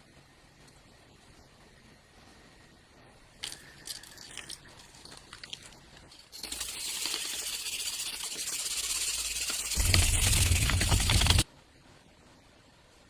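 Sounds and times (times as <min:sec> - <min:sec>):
small parts clicking and rattling: 0:03.4 - 0:11.4
spraying hiss: 0:06.3 - 0:11.4.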